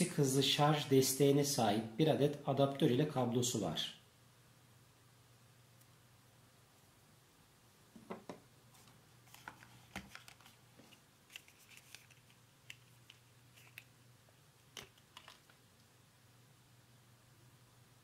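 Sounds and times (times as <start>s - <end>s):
clicks and rustles of packaging: 8.8s - 14.0s, 14.6s - 15.6s.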